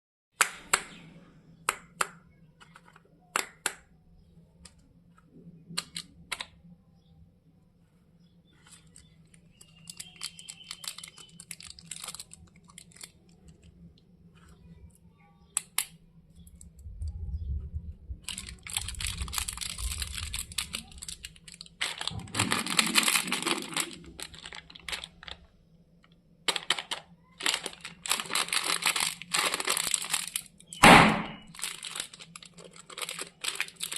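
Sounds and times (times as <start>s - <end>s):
wrapper clicks and taps: 1.7s - 3.9s, 8.6s - 13.7s, 18.3s - 30.9s
plastic and foil crinkling: 8.5s - 14.7s, 18.2s - 33.9s.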